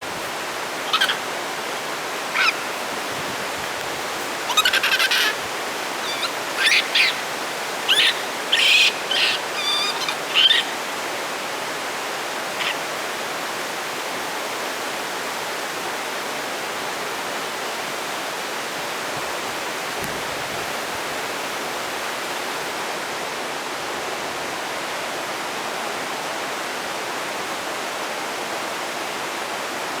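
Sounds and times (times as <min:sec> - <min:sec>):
steady rushing hiss: 0:00.0 - 0:14.6
high-pitched animal calls: 0:00.8 - 0:01.4, 0:02.3 - 0:02.8, 0:04.2 - 0:10.9.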